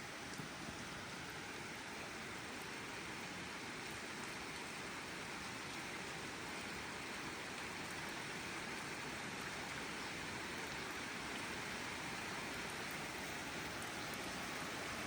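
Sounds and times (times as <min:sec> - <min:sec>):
steady rain hiss: 0:00.0 - 0:15.0.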